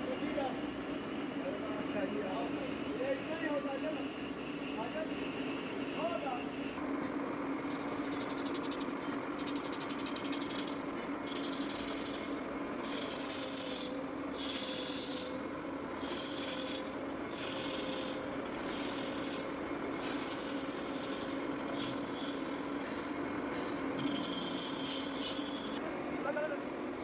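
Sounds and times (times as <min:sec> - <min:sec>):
rasping scraping on metal shaft: 0:07.6 - 0:25.8
lathe humming: 0:10.2 - 0:26.9.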